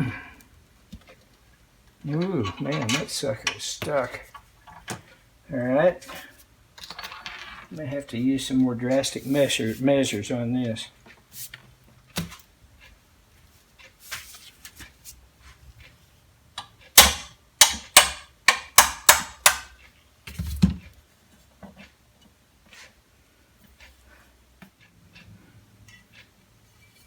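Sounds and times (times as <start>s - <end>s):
hammer blows on metal part: 17.0s - 19.7s.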